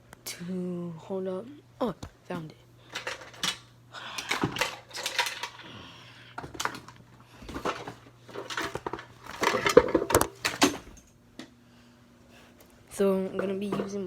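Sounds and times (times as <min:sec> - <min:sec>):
hard toys clattering: 0:02.9 - 0:03.6, 0:04.2 - 0:05.7, 0:06.4 - 0:11.1.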